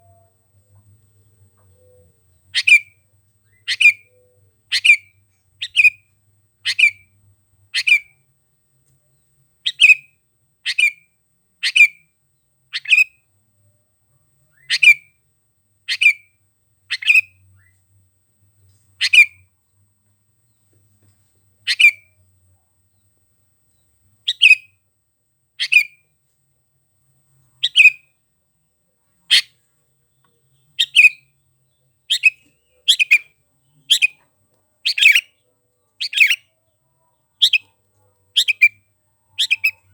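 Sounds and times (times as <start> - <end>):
bulbul calling: 1.7 - 6.0, 6.6 - 7.1, 7.8 - 8.2, 9.7 - 10.1, 10.7 - 11.0, 11.6 - 12.0, 12.7 - 13.1, 14.6 - 15.0, 15.9 - 16.3, 16.9 - 17.7, 19.0 - 19.4, 21.7 - 22.1, 24.3 - 24.7, 25.6 - 26.0, 27.6 - 28.1, 29.3 - 29.5, 30.2 - 31.3, 32.1 - 34.2, 34.8 - 35.4, 36.0 - 36.5, 37.3 - 37.7, 38.3 - 39.9.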